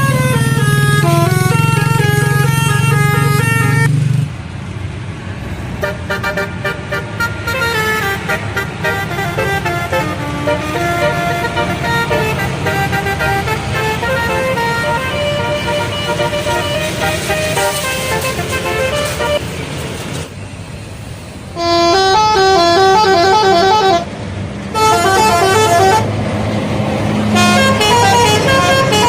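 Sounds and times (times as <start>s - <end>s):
multi-tone bus horn melody: 0.0s - 4.0s, 5.8s - 19.8s, 21.5s - 29.0s
bus engine running: 0.0s - 29.0s.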